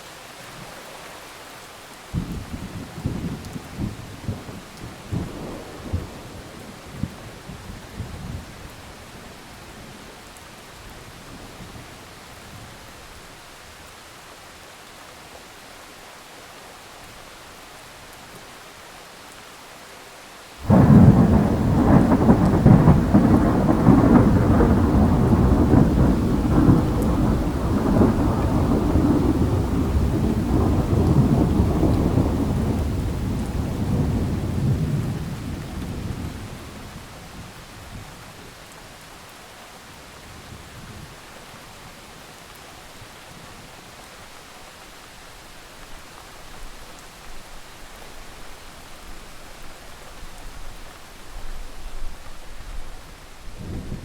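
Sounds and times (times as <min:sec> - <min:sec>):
steady rain: 0:00.0 - 0:54.0
loud thunderclap: 0:20.6 - 0:36.8
rumble of thunder: 0:20.6 - 0:37.5, 0:53.5 - 0:54.0.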